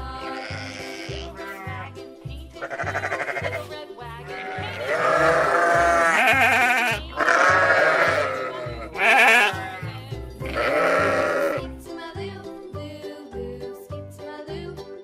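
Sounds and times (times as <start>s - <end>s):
children's music with steady beat: 0.0s - 15.0s
sheep bleating: 0.2s - 1.9s, 2.6s - 11.7s.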